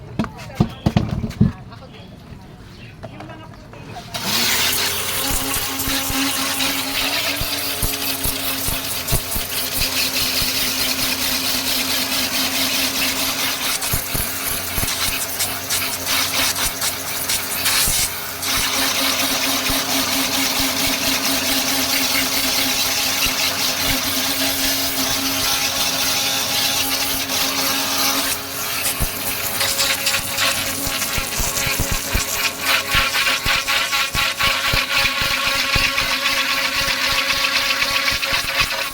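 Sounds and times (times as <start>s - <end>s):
pressure washer motor humming: 4.1s - 38.9s
water spraying hiss: 13.6s - 19.8s.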